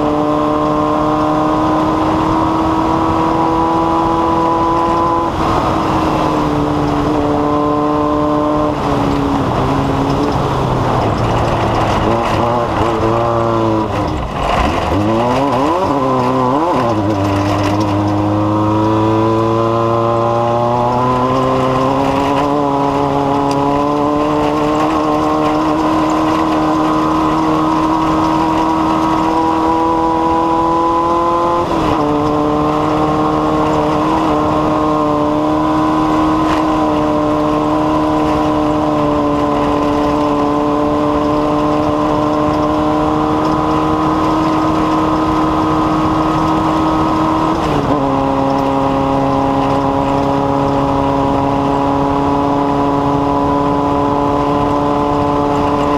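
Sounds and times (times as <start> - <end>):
engine-like drone: 0.0 - 55.9.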